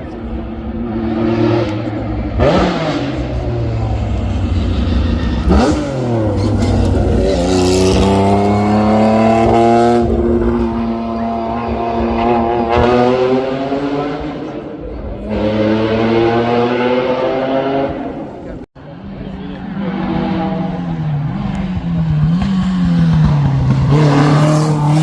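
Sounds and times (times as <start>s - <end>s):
race cars rushing past: 0.0s - 25.0s
engine revving hard: 1.0s - 14.5s, 15.3s - 18.1s, 22.2s - 25.0s.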